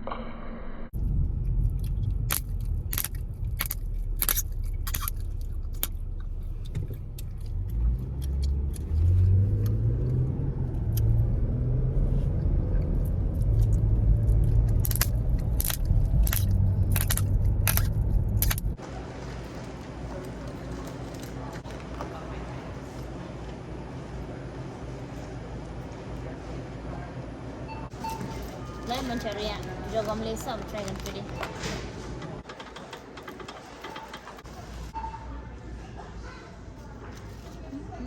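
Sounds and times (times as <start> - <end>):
low rumble: 0.0 - 18.8
chewing gum snapping: 1.7 - 10.2, 13.4 - 18.7.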